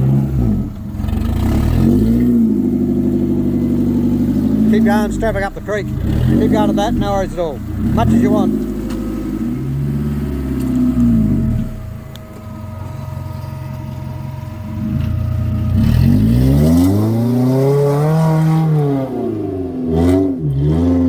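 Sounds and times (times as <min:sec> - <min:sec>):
vehicle engine revving: 0:00.0 - 0:21.0.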